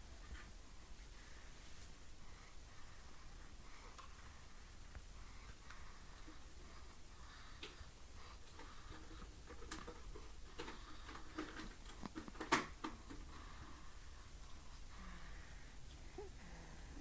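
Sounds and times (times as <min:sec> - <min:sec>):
baby snoring: 0:15.0 - 0:17.0.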